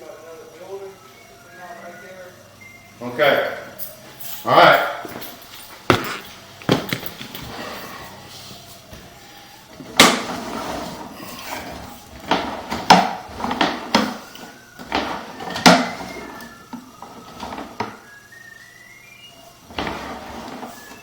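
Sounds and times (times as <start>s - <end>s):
sharp knocks and clanks: 5.8s - 7.4s.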